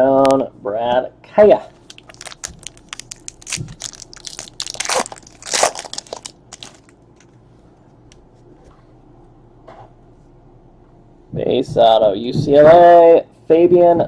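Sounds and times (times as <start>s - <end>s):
card packaging crinkling: 1.7s - 7.3s.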